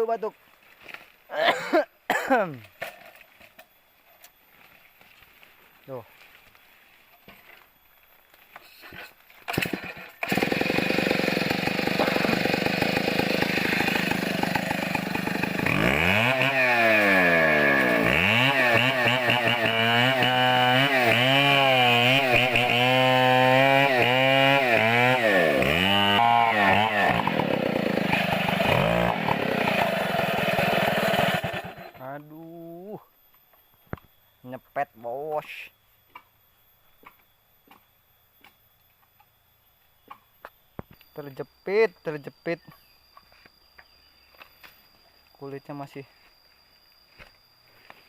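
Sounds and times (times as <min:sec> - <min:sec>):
chainsaw cutting wood: 0:08.9 - 0:32.0.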